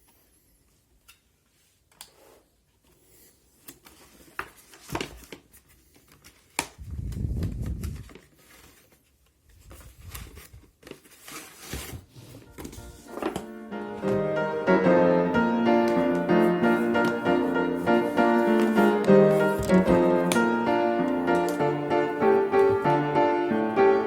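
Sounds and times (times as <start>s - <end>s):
dull handling noise: 15.4s - 23.5s
packaging clicks and rustles: 15.9s - 23.0s.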